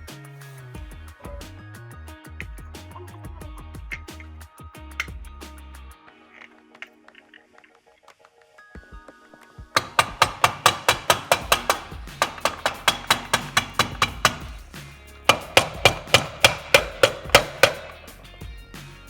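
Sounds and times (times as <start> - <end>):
hammer blows: 9.8 - 18.3.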